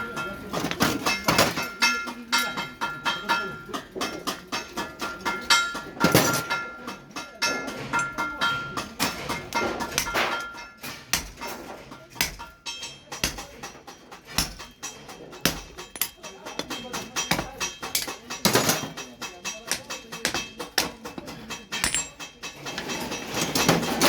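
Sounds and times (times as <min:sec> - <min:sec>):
hammer striking steel on anvil: 0:00.0 - 0:23.9.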